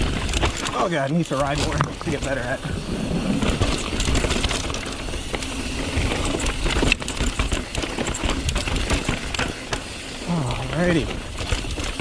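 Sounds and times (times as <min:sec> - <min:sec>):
bike tyres on dirt and rock: 0:00.0 - 0:12.0
chain and frame rattling: 0:00.0 - 0:12.0
wind buffeting microphone: 0:01.4 - 0:06.8.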